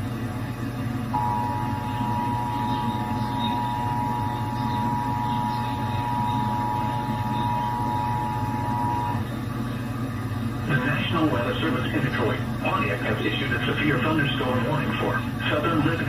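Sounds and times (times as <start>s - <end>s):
low steady hum: 0.0s - 16.0s
two-tone alarm signal: 1.1s - 9.2s.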